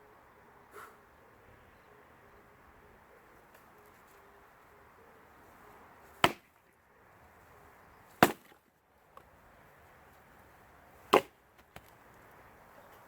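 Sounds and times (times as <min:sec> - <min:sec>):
axe chopping firewood: 0:06.2 - 0:06.7, 0:08.2 - 0:08.7, 0:11.1 - 0:11.9.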